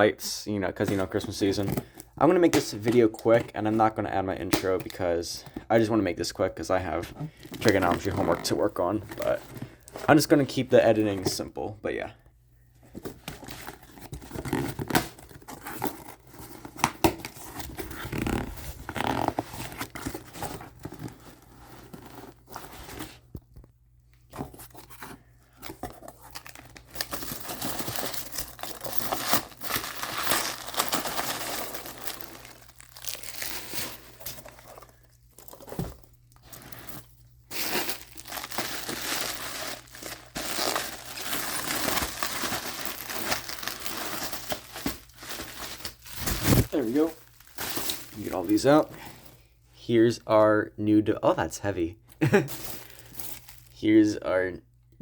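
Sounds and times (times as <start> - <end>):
packaging tearing and crinkling: 25.6 - 48.8, 52.5 - 53.8.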